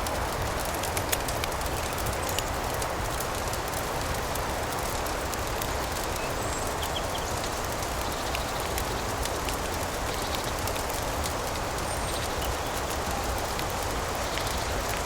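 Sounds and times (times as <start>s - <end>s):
fireplace crackling: 0.0s - 6.3s.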